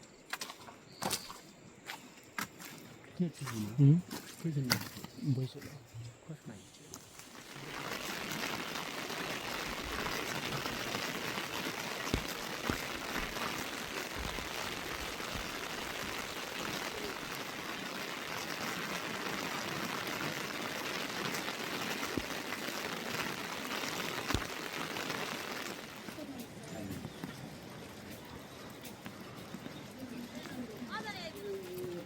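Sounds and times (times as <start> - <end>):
sharp raindrop hits: 7.1 - 26.2
heavy rain hissing: 7.1 - 29.4.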